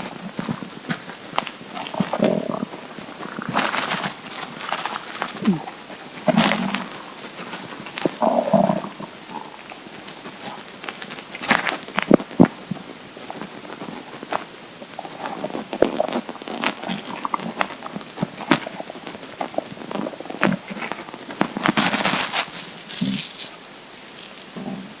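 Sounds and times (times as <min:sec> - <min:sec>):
rushing hiss: 0:00.0 - 0:25.0
stomach gurgling: 0:00.0 - 0:25.0.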